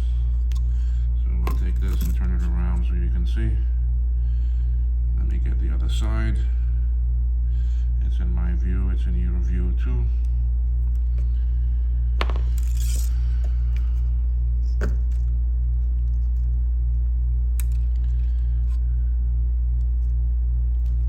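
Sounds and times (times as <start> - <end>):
low electrical hum: 0.0 - 21.0
small tools clicking and clinking: 1.4 - 2.4, 12.2 - 13.9.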